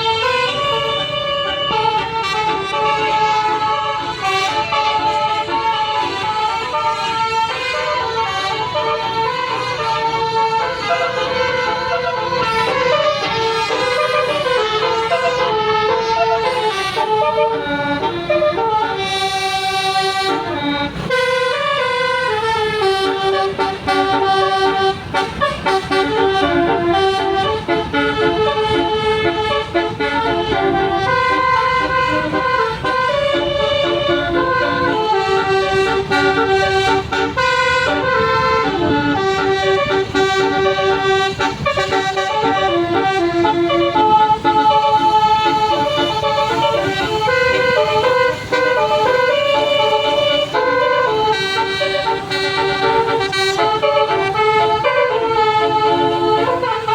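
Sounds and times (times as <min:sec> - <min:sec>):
bus musical horn playing a tune: 0:00.0 - 0:56.9.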